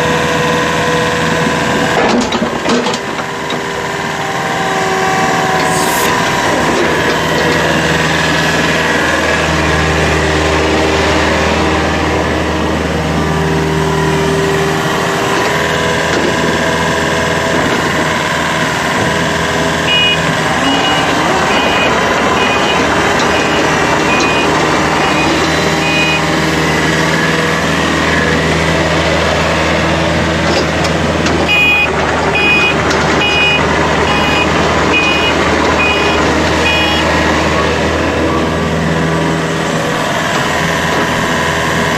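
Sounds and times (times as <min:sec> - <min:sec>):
excavator engine running: 0:00.0 - 0:41.9
warning alarm beeps: 0:05.6 - 0:06.2, 0:19.9 - 0:26.4, 0:31.5 - 0:37.1.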